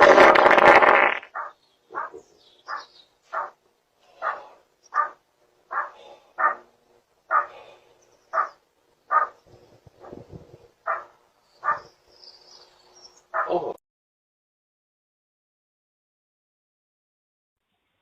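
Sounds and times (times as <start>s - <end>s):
dog barking: 1.3s - 3.6s, 4.2s - 6.7s, 7.3s - 7.6s, 8.3s - 9.4s, 10.9s - 11.9s, 13.3s - 13.6s.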